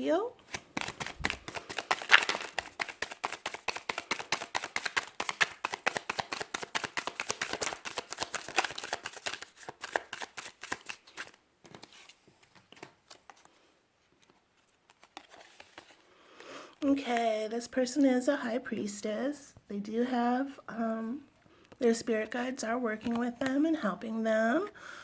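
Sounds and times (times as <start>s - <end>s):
cards being shuffled: 0.4s - 16.1s, 23.0s - 23.6s.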